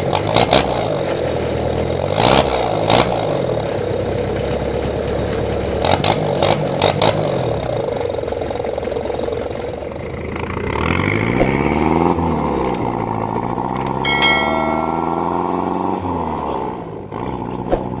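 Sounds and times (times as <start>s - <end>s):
diesel engine revving and idling: 0.0s - 13.9s
sharp clicks: 12.6s - 12.8s, 13.8s - 14.0s
brief high-pitched tone: 13.8s - 15.5s.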